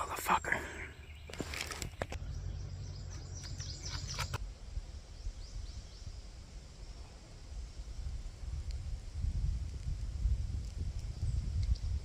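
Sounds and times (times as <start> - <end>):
small birds chirping: 0.0 - 8.1
rustles: 1.2 - 2.3, 3.0 - 4.5
wind rumble on microphone: 1.8 - 12.0.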